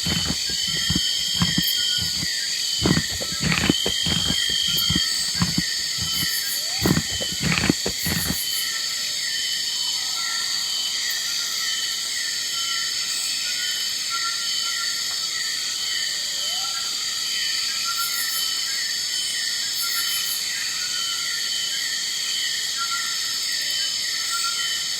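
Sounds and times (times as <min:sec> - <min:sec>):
short low animal sounds: 0:00.0 - 0:08.4.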